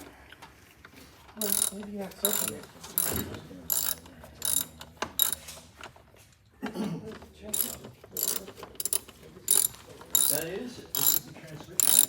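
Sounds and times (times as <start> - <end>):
metal parts clinking: 1.4 - 5.6, 7.5 - 12.0.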